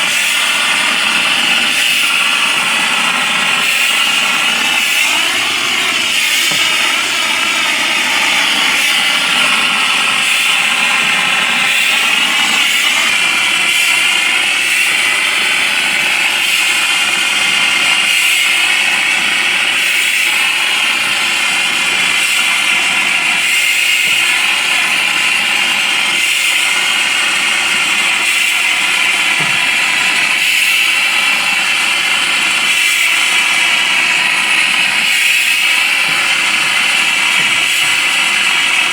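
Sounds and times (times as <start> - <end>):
machine running with whine: 0.0 - 38.9
compressed air hissing: 0.1 - 16.8.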